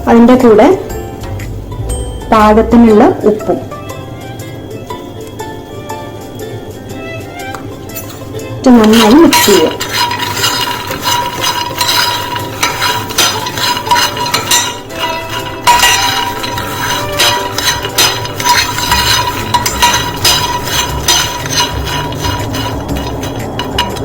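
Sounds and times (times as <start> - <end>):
spoon clinking on glass bowl: 7.9 - 24.0.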